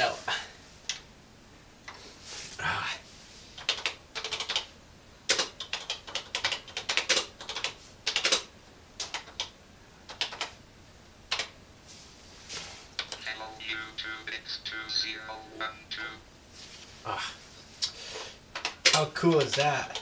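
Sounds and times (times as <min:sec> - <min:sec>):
computer keyboard key clicks: 0:05.3 - 0:09.5, 0:10.1 - 0:10.5, 0:18.6 - 0:20.0.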